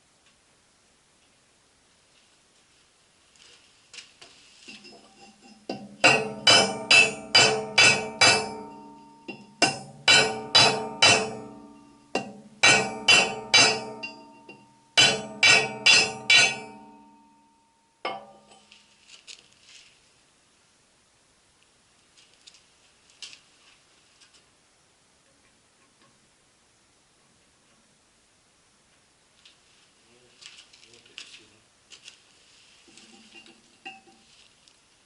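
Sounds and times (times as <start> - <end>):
hammer striking ringing steel: 5.7 - 18.6.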